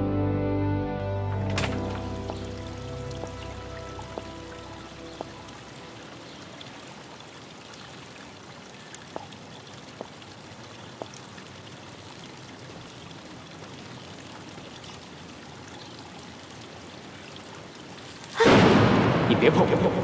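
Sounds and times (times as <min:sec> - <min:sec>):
running water hiss: 0:01.4 - 0:18.6
faint drip-like clicks: 0:01.6 - 0:18.4.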